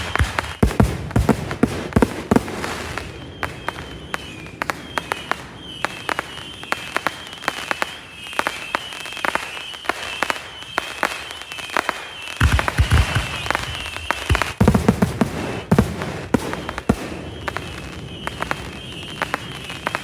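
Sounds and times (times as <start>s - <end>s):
deep firework booms: 0.0s - 6.9s, 12.4s - 20.0s
fireworks crackling pops: 0.0s - 20.0s.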